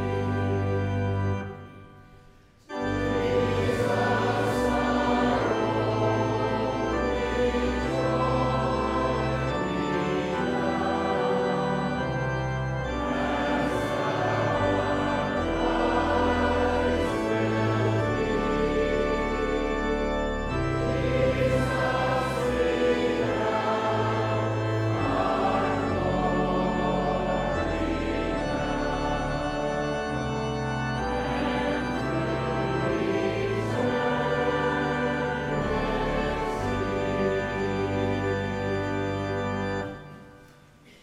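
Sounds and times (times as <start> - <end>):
congregation singing a hymn: 0.0 - 41.0
organ accompaniment: 0.0 - 41.0.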